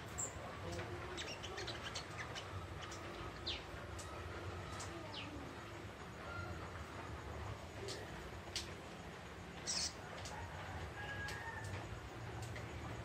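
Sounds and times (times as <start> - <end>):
bird twittering and chirping: 0.0 - 4.1, 9.6 - 10.0.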